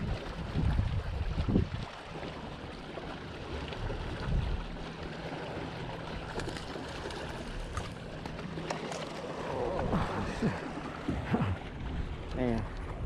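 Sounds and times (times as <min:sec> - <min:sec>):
wind rumbling on microphone: 0:00.0 - 0:02.2, 0:03.8 - 0:04.9
steady low hum: 0:02.4 - 0:13.0.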